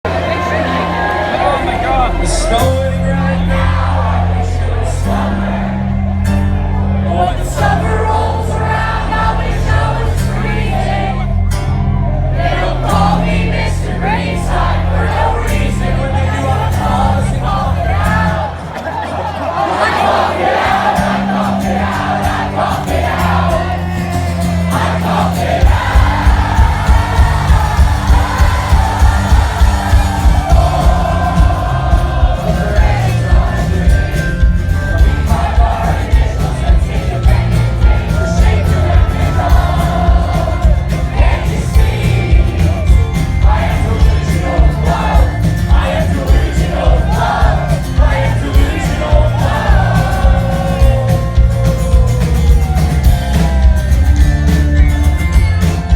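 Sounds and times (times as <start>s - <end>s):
crowd singing along: 0.0s - 55.9s
live rock band playing: 0.1s - 19.2s, 20.5s - 55.9s
lead vocal singing: 0.1s - 53.8s
drum beat: 24.8s - 55.9s.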